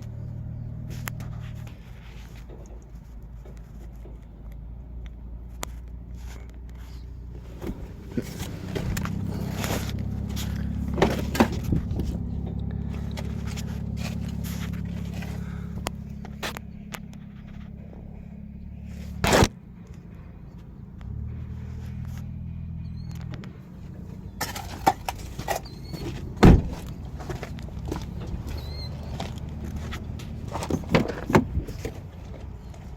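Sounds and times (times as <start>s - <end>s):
engine idling: 0.0s - 32.9s
sharp knocks and clunks: 7.5s - 17.1s, 24.4s - 28.6s, 29.2s - 32.6s.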